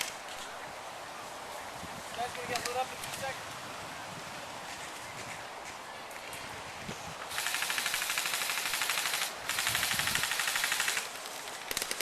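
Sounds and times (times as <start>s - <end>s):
airsoft gun firing bursts: 7.3s - 11.1s, 11.7s - 12.0s.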